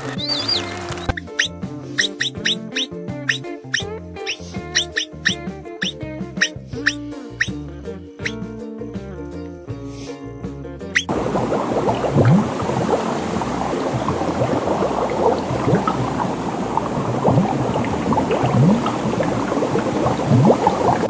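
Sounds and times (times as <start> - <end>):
water bubbling and gurgling: 11.1 - 21.0.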